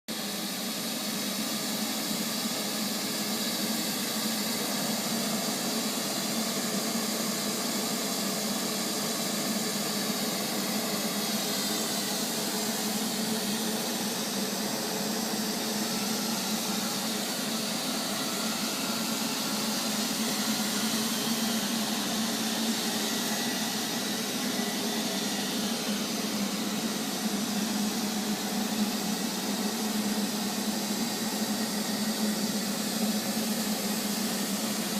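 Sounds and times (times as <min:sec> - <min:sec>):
robotic vacuum cleaner running: 0:00.2 - 0:34.9.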